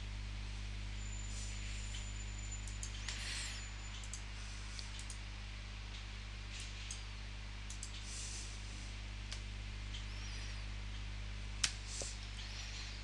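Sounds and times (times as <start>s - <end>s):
low electrical hum and hiss: 0.0s - 13.0s
computer mouse clicks: 3.9s - 4.2s, 4.8s - 5.2s, 7.7s - 8.0s.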